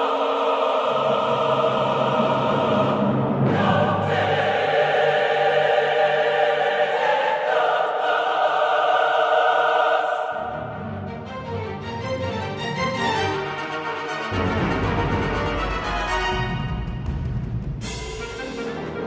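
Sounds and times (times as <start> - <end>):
choir singing sustained chords: 0.0 - 17.0
orchestral accompaniment: 10.4 - 19.0.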